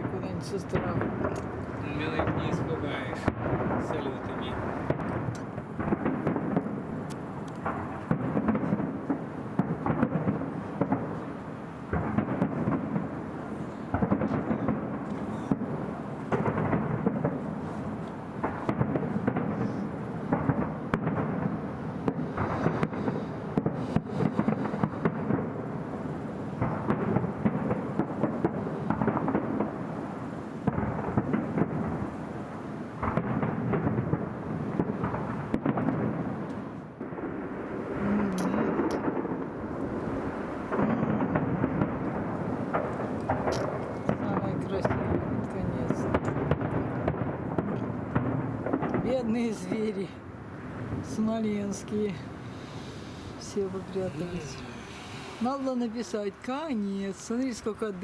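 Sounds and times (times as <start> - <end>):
booming rumble: 0.0 - 7.0, 37.0 - 51.4
fireworks bursting: 0.0 - 58.0.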